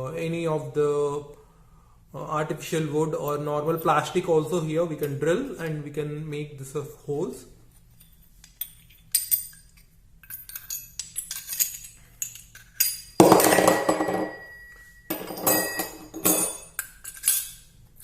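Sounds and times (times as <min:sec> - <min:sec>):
metal tools clinking: 0:08.0 - 0:17.7
ringing metallic clang: 0:13.2 - 0:16.8.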